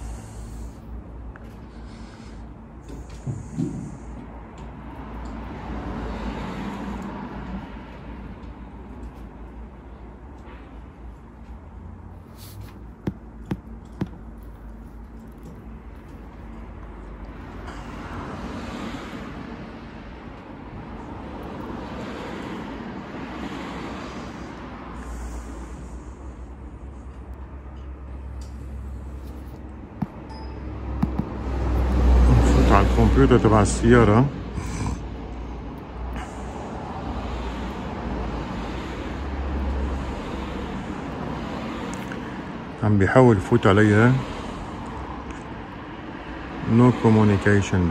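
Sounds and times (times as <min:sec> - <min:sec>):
vehicle passing: 0:12.0 - 0:42.8.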